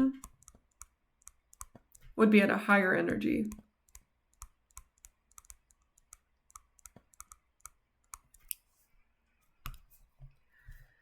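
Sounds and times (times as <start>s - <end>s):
computer mouse clicking: 0.0s - 2.2s, 3.4s - 8.6s.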